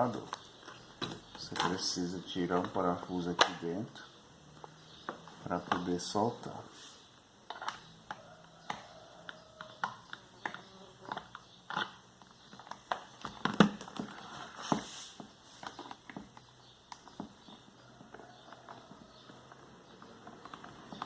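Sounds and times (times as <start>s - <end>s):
plastic fan parts clicking and knocking: 0.2s - 3.8s, 4.7s - 6.6s, 7.5s - 21.0s.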